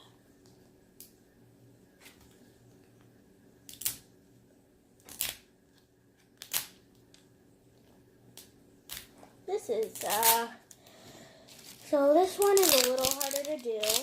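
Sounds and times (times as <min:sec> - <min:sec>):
wrapping crinkling rips: 0:05.0 - 0:05.5, 0:06.3 - 0:06.8, 0:09.8 - 0:10.8, 0:11.5 - 0:14.0.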